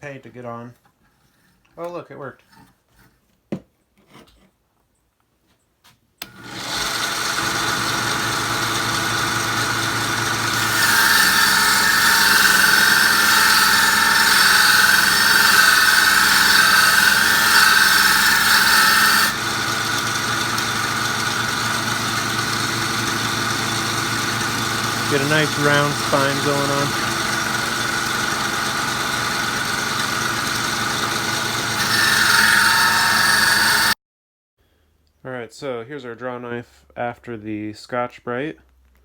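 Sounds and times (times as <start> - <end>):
belt sander running: 6.2 - 34.0
blade grinding on sander belt: 6.2 - 34.0.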